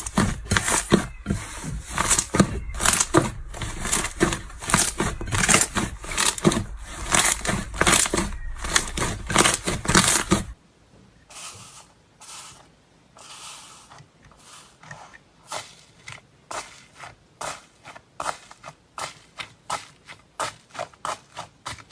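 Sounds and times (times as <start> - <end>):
slime squishing: 0.0 - 10.6, 11.4 - 21.9
slime crackling and popping: 1.8 - 10.6.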